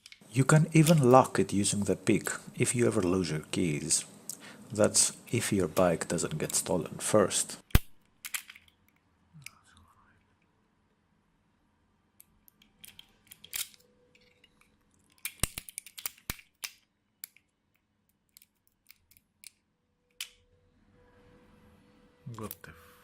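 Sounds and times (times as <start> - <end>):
lock pick clicking and scraping: 7.7 - 8.9, 12.4 - 20.4.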